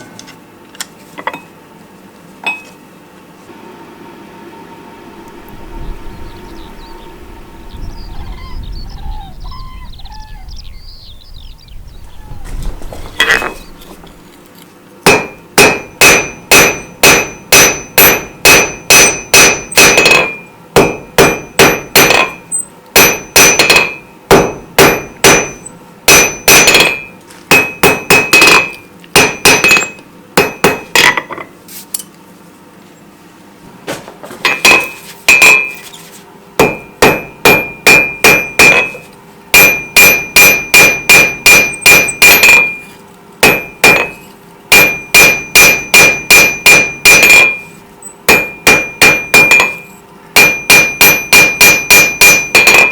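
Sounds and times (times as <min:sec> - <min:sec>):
hammer striking steel on anvil: 0:15.0 - 0:31.5, 0:34.4 - 0:35.8, 0:36.6 - 0:52.9.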